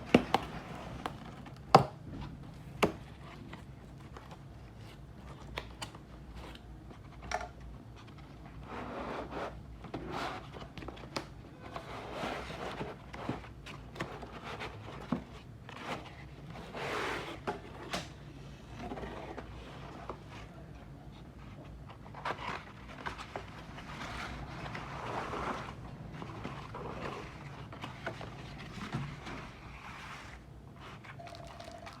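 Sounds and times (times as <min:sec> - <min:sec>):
packaging rustling: 0:31.0 - 0:32.0.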